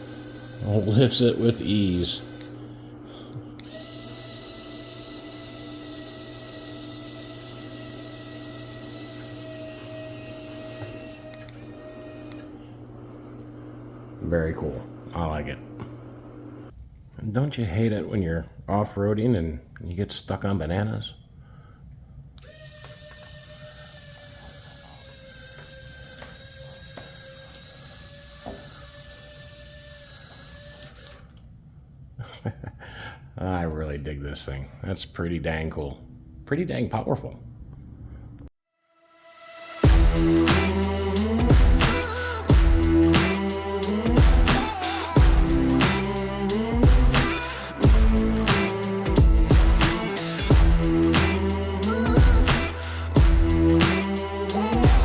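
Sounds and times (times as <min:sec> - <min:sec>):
small electric winch motor whine: 0:00.0 - 0:16.7, 0:22.4 - 0:31.5, 0:39.4 - 0:55.0.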